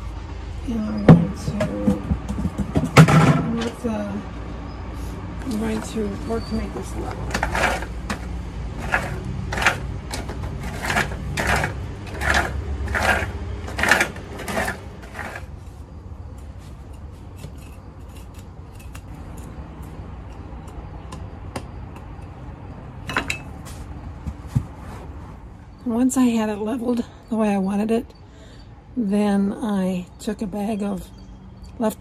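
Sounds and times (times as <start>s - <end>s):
tool scraping into soil: 5.5s - 15.8s.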